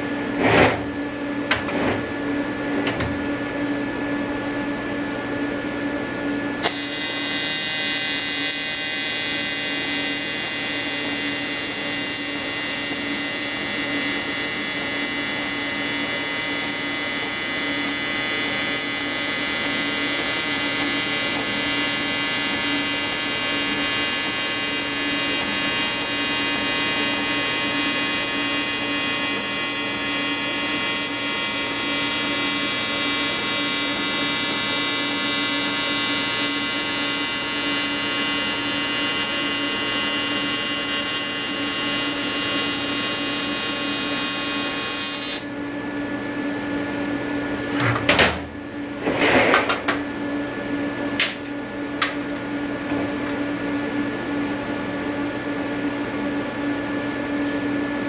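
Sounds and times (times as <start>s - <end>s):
steady hum: 0.0s - 56.6s
welding arc buzzing: 6.6s - 45.6s.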